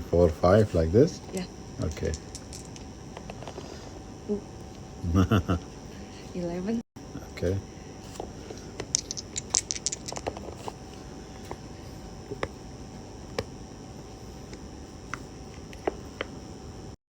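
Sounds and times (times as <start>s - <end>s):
game pieces clicking and rattling: 1.9s - 2.8s, 8.9s - 10.6s.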